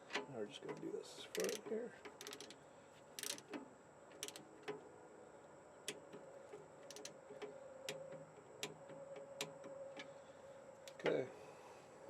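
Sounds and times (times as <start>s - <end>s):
faint steady hum: 0.0s - 12.0s
ratcheting torque wrench clicks: 1.3s - 2.6s, 3.2s - 3.6s, 4.2s - 4.4s, 6.8s - 7.2s.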